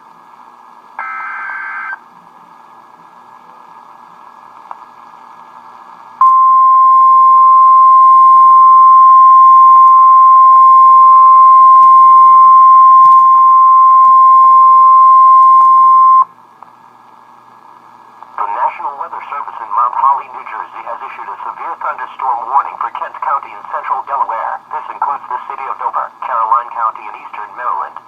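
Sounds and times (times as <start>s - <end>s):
loud steady alert beep: 6.2s - 16.2s
radio hiss: 18.3s - 28.0s.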